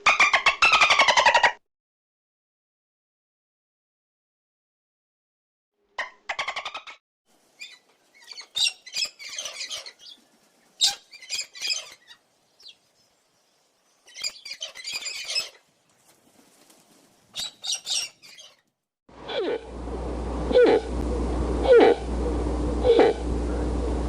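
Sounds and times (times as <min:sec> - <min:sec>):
birds calling in harsh bursts: 0:06.3 - 0:18.6.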